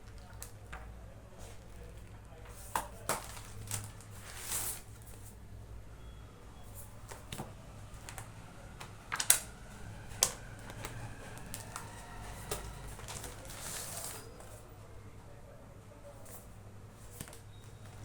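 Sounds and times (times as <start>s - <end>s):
soft rustle: 1.3s - 5.5s.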